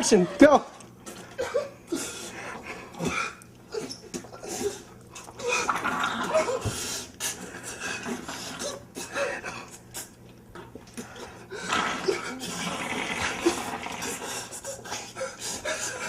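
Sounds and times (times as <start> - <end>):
person breathing heavily: 14.0 - 16.0.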